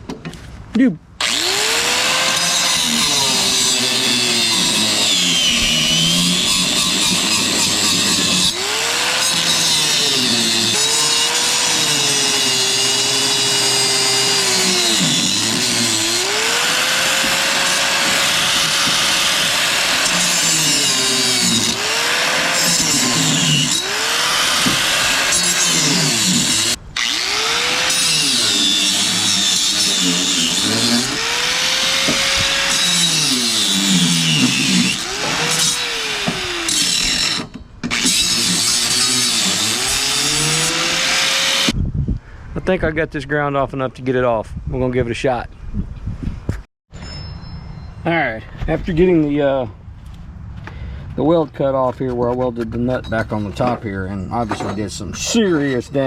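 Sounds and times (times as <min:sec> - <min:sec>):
angle grinder cutting steel: 0:01.2 - 0:41.8.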